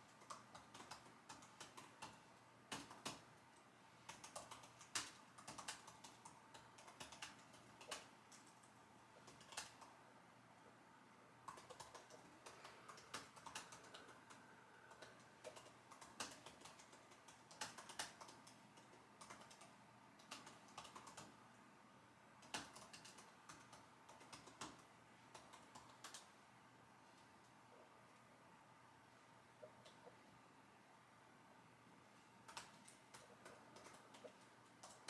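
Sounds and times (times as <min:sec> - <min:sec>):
keyboard typing clicks: 0:00.0 - 0:03.3, 0:04.1 - 0:10.0, 0:11.4 - 0:21.4, 0:22.4 - 0:26.3, 0:32.4 - 0:35.0.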